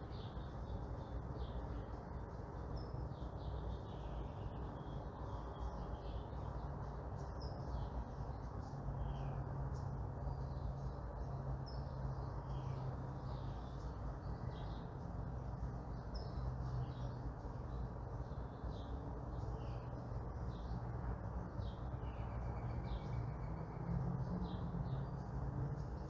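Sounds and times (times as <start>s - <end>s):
distant traffic rumble: 0.0s - 26.0s
songbirds chirping: 0.0s - 26.0s.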